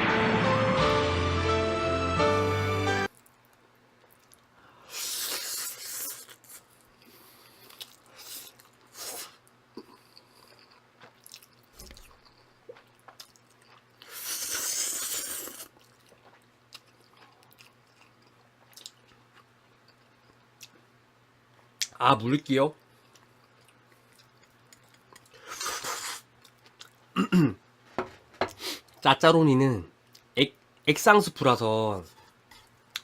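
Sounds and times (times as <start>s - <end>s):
person slurping noodles: 4.9s - 6.6s, 7.7s - 10.0s, 14.0s - 15.7s, 25.4s - 26.3s
chewing and wet mouth clicks: 6.1s - 8.9s, 9.8s - 14.4s, 15.0s - 20.8s, 22.8s - 25.4s, 26.4s - 27.0s, 30.1s - 30.8s.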